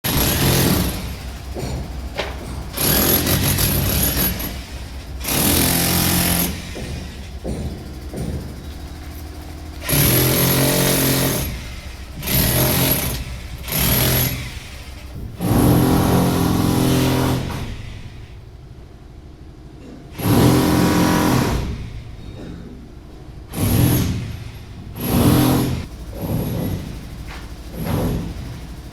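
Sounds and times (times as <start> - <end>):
power tool bursts: 2.8 - 7.6, 9.8 - 18.4, 20.2 - 22.2, 23.5 - 26.8.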